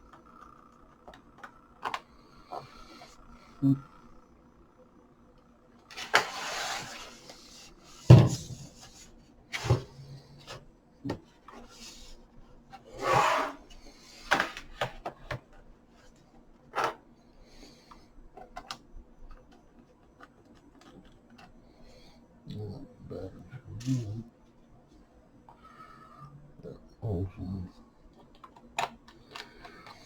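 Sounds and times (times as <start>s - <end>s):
scraping and rubbing on plastic case: 5.9s - 7.5s.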